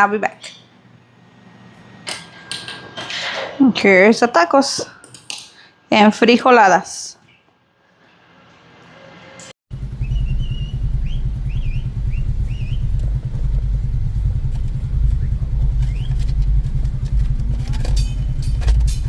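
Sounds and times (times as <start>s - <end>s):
vehicle engine rumbling: 9.7s - 19.0s.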